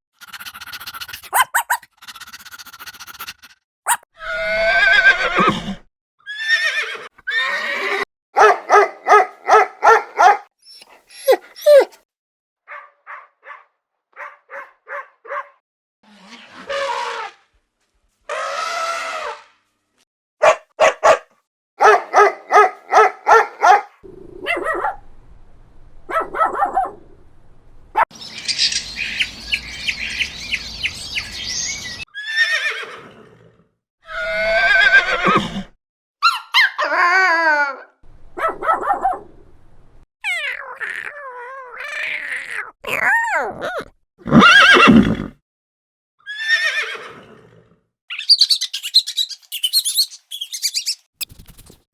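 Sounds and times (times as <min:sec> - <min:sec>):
animal calls: 0:01.1 - 0:03.0, 0:03.9 - 0:05.5, 0:09.5 - 0:12.0, 0:48.1 - 0:51.1
horses neighing and whinnying: 0:03.9 - 0:08.1, 0:32.2 - 0:33.4, 0:34.1 - 0:35.8, 0:42.0 - 0:45.3, 0:46.3 - 0:47.5.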